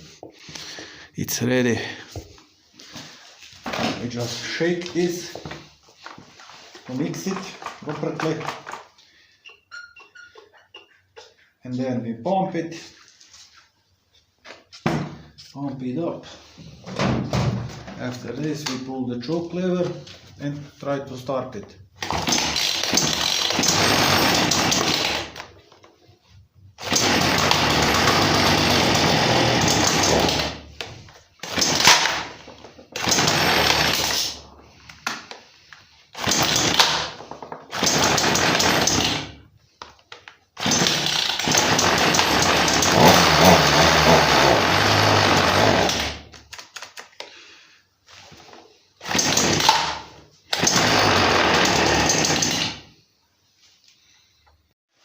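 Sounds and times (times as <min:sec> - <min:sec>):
chainsaw engine bursts: 0:22.0 - 0:25.4, 0:26.8 - 0:30.6, 0:31.4 - 0:32.4, 0:33.0 - 0:34.4, 0:36.2 - 0:39.4, 0:40.6 - 0:46.3, 0:49.0 - 0:52.8.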